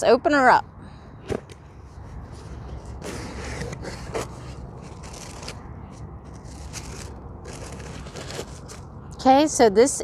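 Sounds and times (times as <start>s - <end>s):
cardboard and paper rustling: 2.3s - 8.9s.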